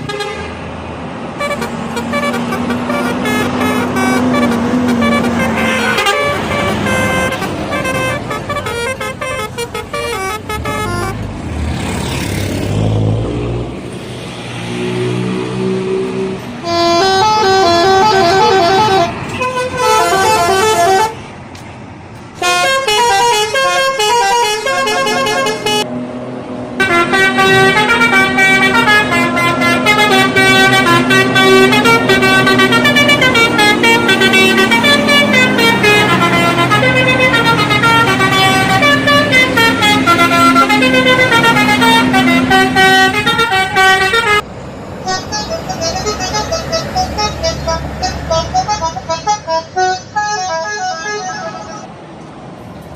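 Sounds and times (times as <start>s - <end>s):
multi-note air horns playing tunes: 1.4s - 11.2s, 16.6s - 21.2s, 22.4s - 25.9s, 26.8s - 44.4s, 45.1s - 51.9s.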